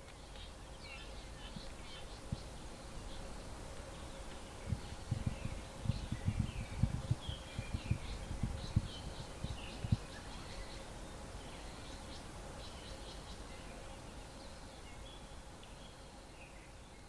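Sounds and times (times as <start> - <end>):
small birds chirping: 0.0 - 17.0
low thumps: 4.6 - 10.0.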